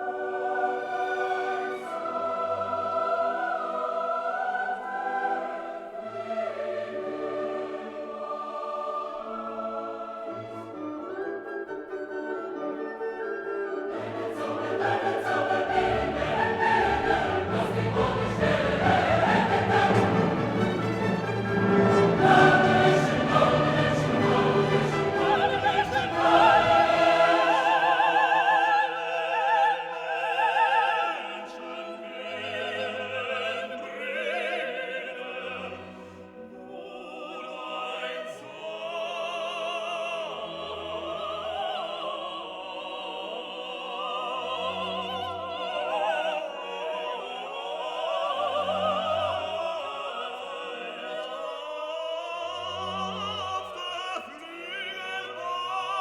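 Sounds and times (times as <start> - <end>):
operatic voices singing: 0.0 - 11.5, 13.8 - 56.0
orchestra playing: 6.6 - 37.2.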